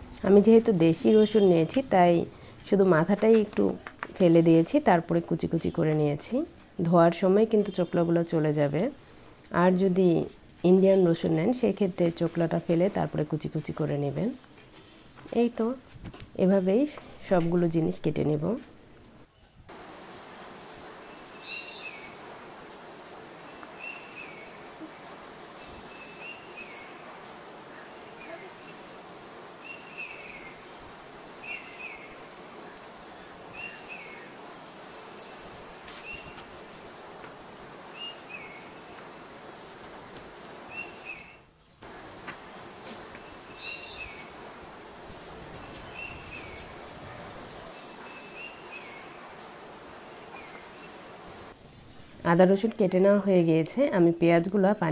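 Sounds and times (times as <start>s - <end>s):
steady background hiss: 0.0s - 54.9s
birds chirping: 0.3s - 3.8s, 19.7s - 52.1s.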